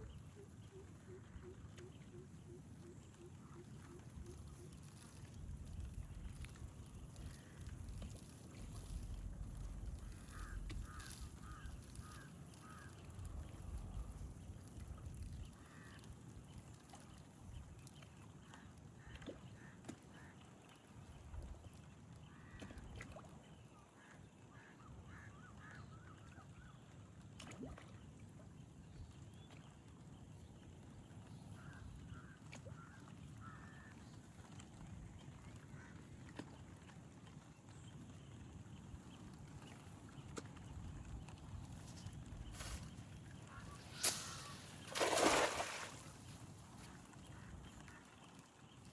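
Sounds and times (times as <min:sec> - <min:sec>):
bird calling: 0:42.5 - 0:48.1
background hiss: 0:43.7 - 0:46.5.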